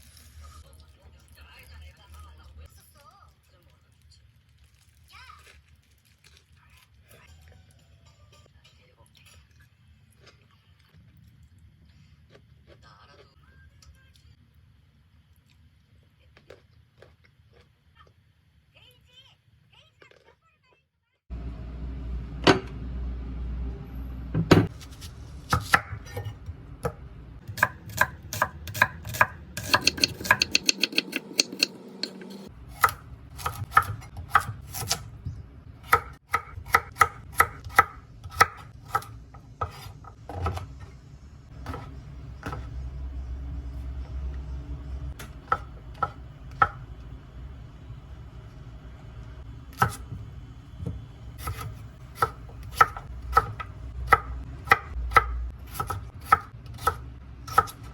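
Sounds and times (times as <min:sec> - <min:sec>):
knife chopping on cutting board: 0:24.4 - 0:35.1, 0:35.8 - 0:40.8, 0:41.6 - 0:42.7, 0:49.7 - 0:50.2, 0:50.8 - 0:57.9.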